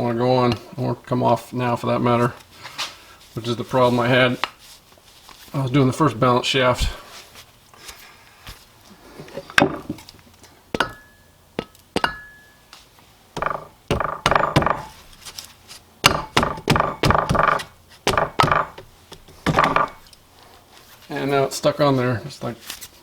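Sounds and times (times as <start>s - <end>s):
metal parts knocking and clinking: 13.4s - 15.0s.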